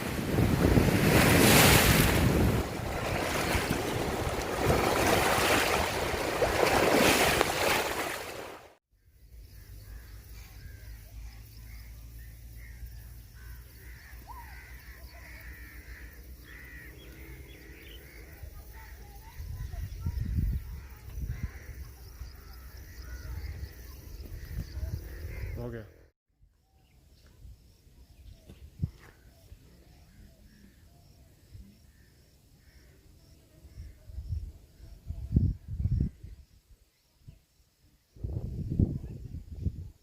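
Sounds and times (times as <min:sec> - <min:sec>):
wind and rushing water: 0:00.0 - 0:08.8.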